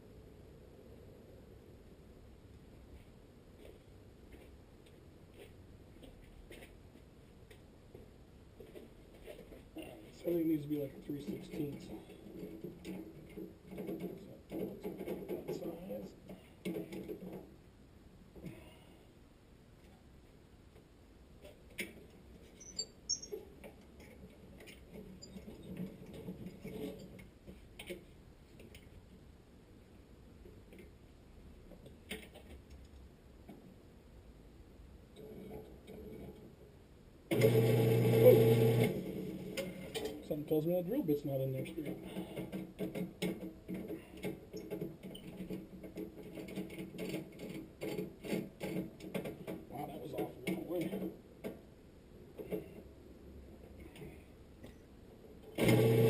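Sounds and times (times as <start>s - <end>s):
electric drill drilling into metal: 55.6s - 56.0s.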